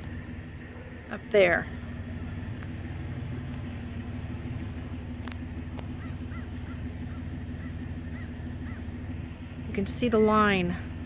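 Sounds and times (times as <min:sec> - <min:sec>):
low rumble and hum: 0:00.0 - 0:11.0
bird calls: 0:03.9 - 0:09.1.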